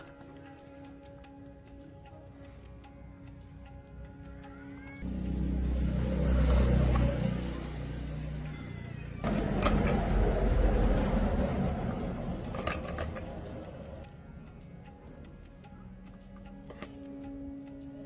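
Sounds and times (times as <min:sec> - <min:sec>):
heavy engine rumbling: 0:05.1 - 0:14.2.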